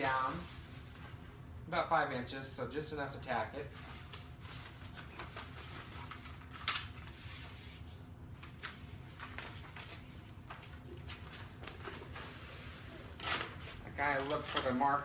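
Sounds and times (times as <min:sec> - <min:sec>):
steady low hum: 0:00.0 - 0:15.0
vinyl wrap rustling and crinkling: 0:03.7 - 0:15.0.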